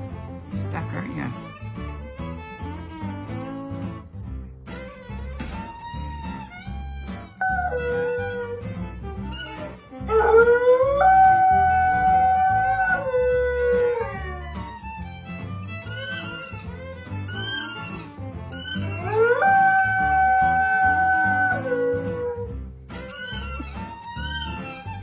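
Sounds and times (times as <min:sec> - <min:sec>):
dog howling: 0:07.4 - 0:08.6, 0:09.4 - 0:14.5, 0:18.8 - 0:22.5.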